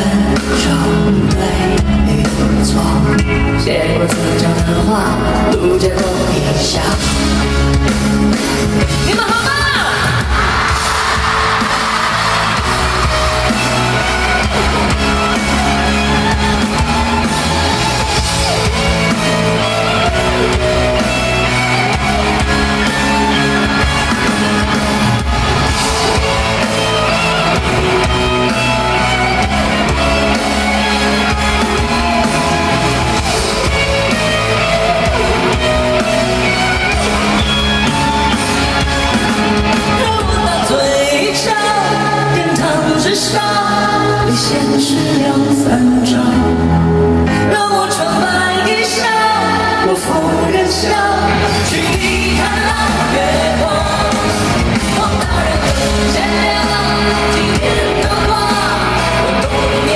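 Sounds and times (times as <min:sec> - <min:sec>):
drums: 0:00.0 - 0:59.9
live pop-rock band playing: 0:00.0 - 0:59.9
heavy bass line: 0:10.2 - 0:40.7.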